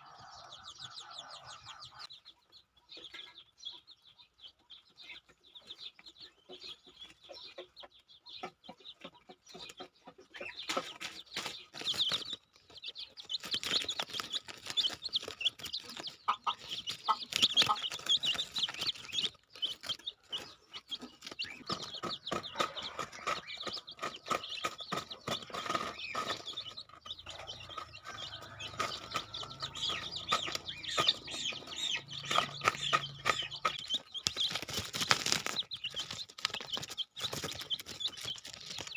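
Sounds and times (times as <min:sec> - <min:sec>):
chickens clucking and chirping: 0:00.0 - 0:38.9.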